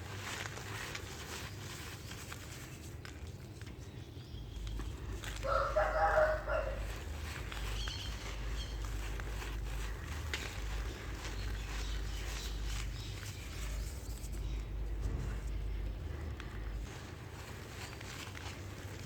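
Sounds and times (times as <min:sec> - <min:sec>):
dry dirt crackling: 0:00.0 - 0:19.0
rooster crowing: 0:05.3 - 0:07.2
low rumble: 0:06.8 - 0:19.0.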